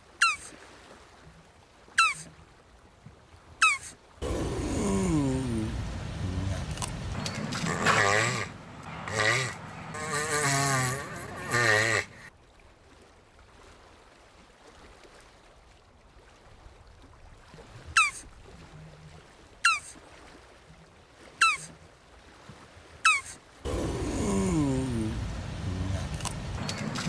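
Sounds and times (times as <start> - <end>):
tortoise squeaks: 0.2 - 0.5, 2.0 - 2.3, 3.6 - 4.9, 5.8 - 12.3, 18.0 - 18.2, 19.6 - 19.9, 21.4 - 21.7, 23.1 - 27.0
tortoise bleat-like call: 2.0 - 2.3, 3.6 - 12.3, 21.4 - 21.7, 23.1 - 27.0.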